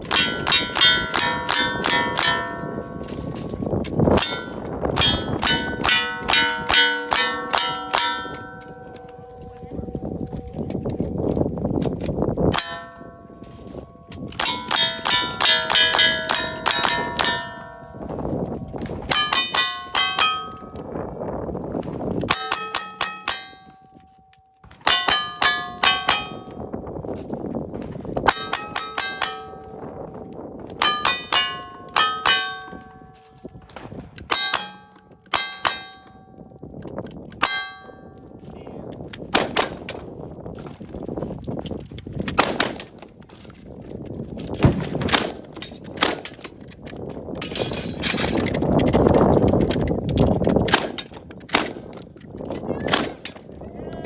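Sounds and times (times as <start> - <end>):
steel target clanging: 0.0 - 10.7, 12.5 - 21.0, 22.2 - 24.0, 24.6 - 26.7, 28.2 - 36.5, 37.4 - 38.3.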